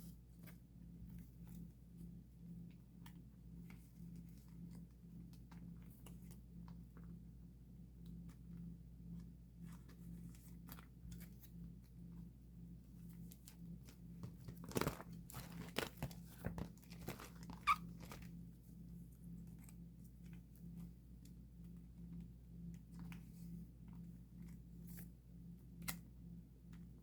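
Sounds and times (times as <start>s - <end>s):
low steady hum: 0.0s - 27.0s
plastic sleeves crinkling: 13.0s - 18.4s.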